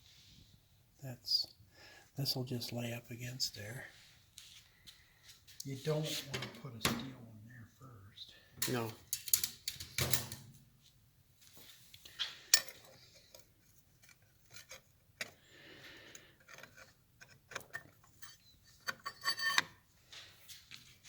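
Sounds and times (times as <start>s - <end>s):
metallic ring: 18.2s - 19.7s.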